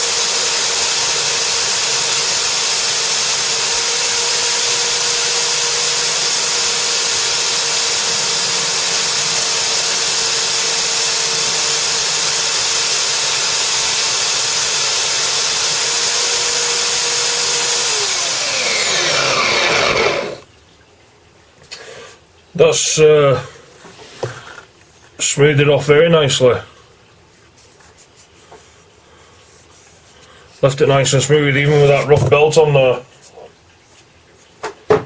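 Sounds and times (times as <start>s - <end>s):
belt sander sanding wood: 0.0s - 20.4s
motor winding down: 0.0s - 20.4s.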